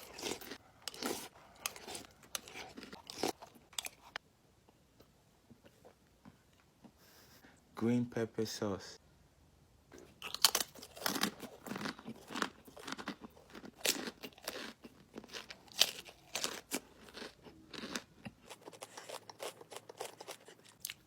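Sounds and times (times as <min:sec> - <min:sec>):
person chewing crunchy food: 0:00.0 - 0:04.2, 0:10.0 - 0:21.0.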